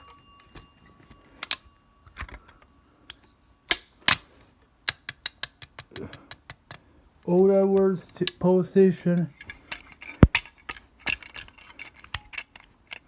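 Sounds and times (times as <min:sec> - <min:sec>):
faint ringing tone: 0:00.0 - 0:03.7
hard objects clicking and knocking: 0:00.0 - 0:06.9.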